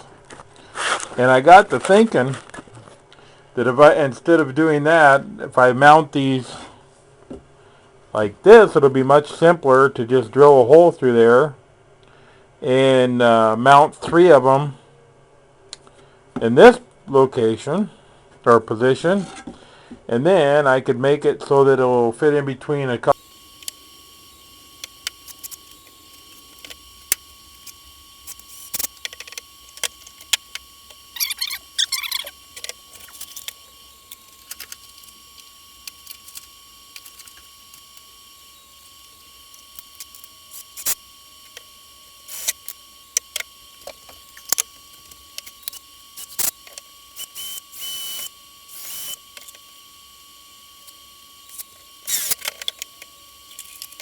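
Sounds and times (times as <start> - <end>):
short squeaks: 31.1 - 35.2.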